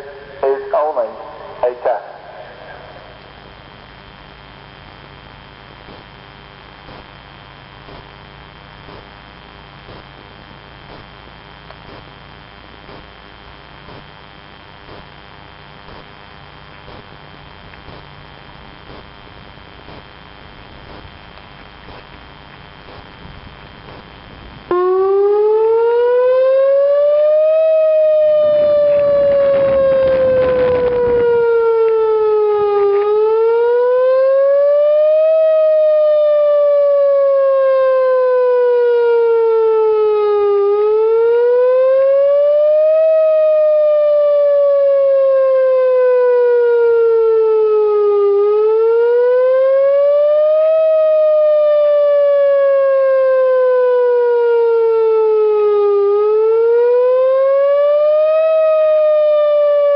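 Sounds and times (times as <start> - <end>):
warning siren wailing: 0.0 - 3.8, 24.4 - 59.9.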